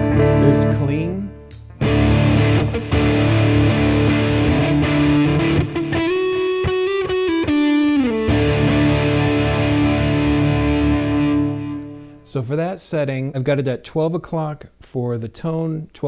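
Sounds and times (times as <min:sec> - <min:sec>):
overdriven electric guitar: 0:00.0 - 0:12.3.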